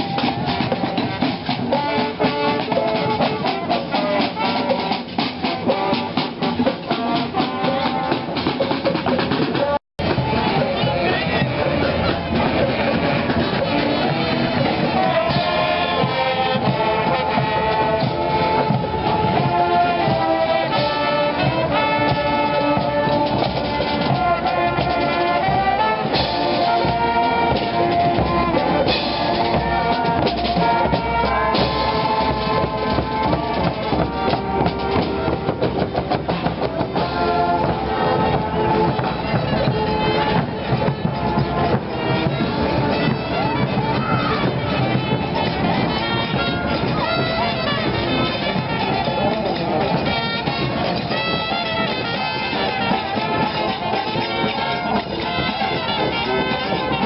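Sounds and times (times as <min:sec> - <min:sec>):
brass band horns: 0:00.0 - 0:57.0
steady drum beat: 0:00.0 - 0:57.0.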